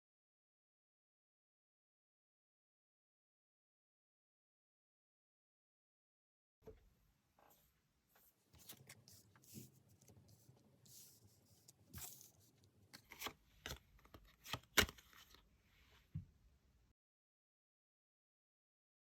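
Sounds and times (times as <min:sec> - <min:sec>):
cards rustling and sliding: 0:08.6 - 0:15.4
cards tapped down: 0:13.1 - 0:15.0.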